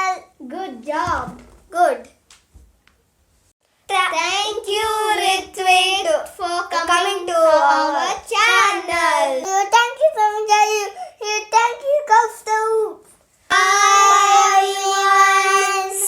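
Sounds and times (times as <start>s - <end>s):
child singing: 4.0s - 10.8s, 13.5s - 16.0s.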